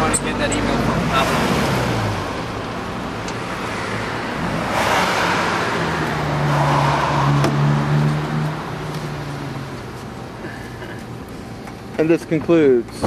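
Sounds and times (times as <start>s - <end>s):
vehicle driving past: 3.4s - 9.6s.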